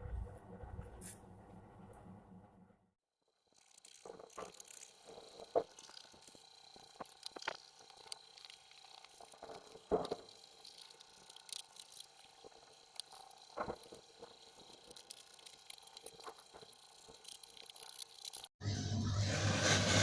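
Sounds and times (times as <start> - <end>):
small knocks and clicks: 3.9 - 18.5.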